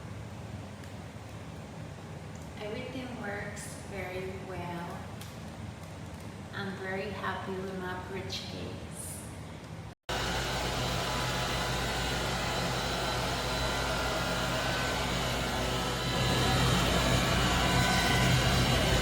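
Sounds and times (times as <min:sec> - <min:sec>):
stick vacuum whirring: 0:10.1 - 0:19.0.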